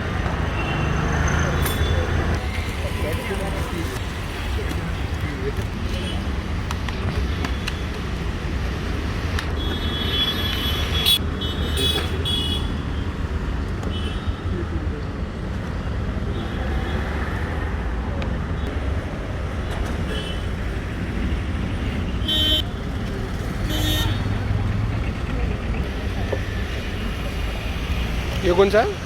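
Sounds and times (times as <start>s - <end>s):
street traffic: 0.0s - 29.0s
vehicle horns tooting: 22.2s - 22.8s, 23.6s - 24.3s.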